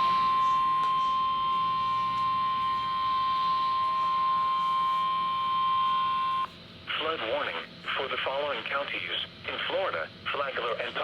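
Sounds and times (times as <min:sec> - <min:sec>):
steady high alert tone: 0:00.0 - 0:06.5.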